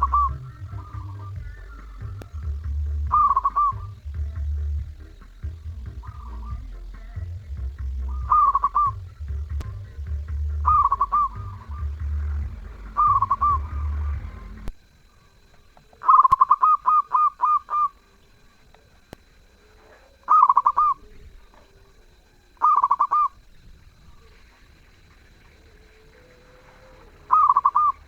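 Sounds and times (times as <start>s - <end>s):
dove cooing: 0.0s - 14.7s, 15.8s - 28.0s
low hum: 0.0s - 15.8s.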